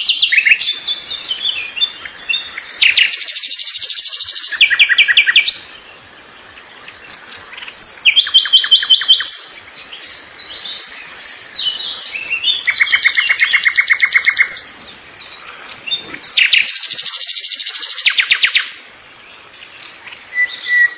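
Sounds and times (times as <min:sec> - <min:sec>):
songbird singing trills: 0:00.0 - 0:20.9
bird chirps and whistles: 0:20.3 - 0:20.9.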